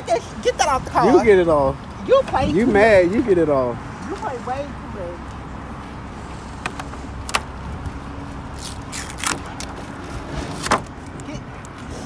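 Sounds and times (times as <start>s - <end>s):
car engine idling: 0.0s - 8.6s
sharp clicks and knocks: 6.6s - 7.5s.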